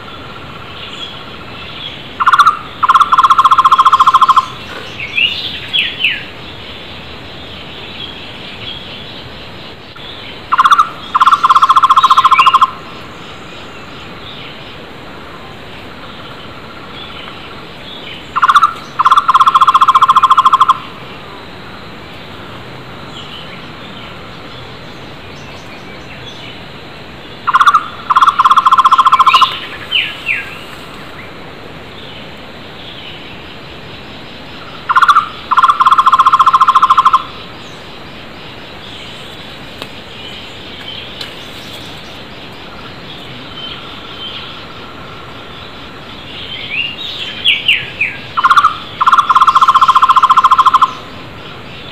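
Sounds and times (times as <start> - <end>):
small birds chirping: 0.0 - 21.4, 23.0 - 51.9
barbet call with trill: 2.2 - 4.6, 10.5 - 12.8, 18.4 - 20.9, 27.5 - 29.7, 34.9 - 37.4, 48.4 - 51.1.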